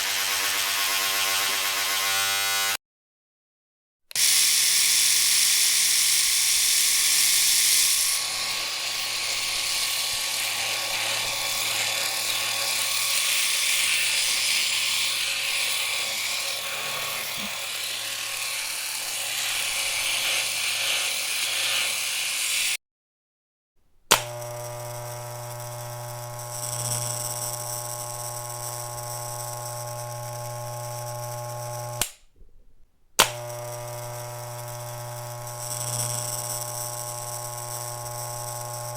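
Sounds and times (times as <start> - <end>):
electric shaver buzzing: 0.0 - 2.8, 4.1 - 22.8, 24.1 - 32.2, 33.2 - 38.9
shaver switch click: 24.1 - 24.4, 31.9 - 32.3, 33.2 - 33.6.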